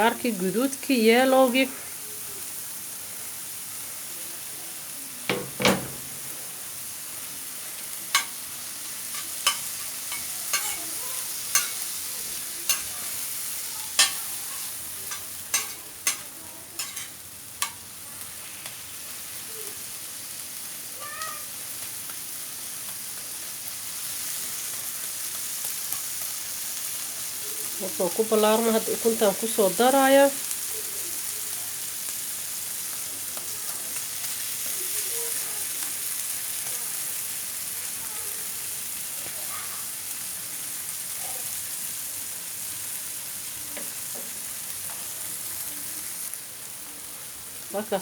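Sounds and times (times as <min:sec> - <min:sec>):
vegetables sizzling in frying pan: 0:00.0 - 0:48.0
utensil scraping pan: 0:09.1 - 0:12.0, 0:12.7 - 0:13.2, 0:13.8 - 0:17.8.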